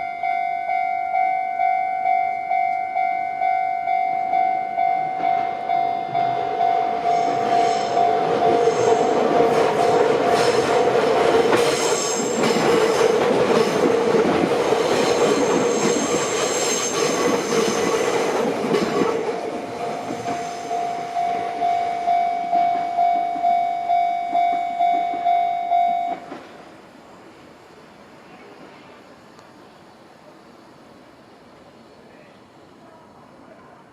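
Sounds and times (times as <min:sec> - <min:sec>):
crossing warning bell ringing: 0:00.0 - 0:12.7, 0:19.6 - 0:26.3
train passing: 0:00.0 - 0:33.9.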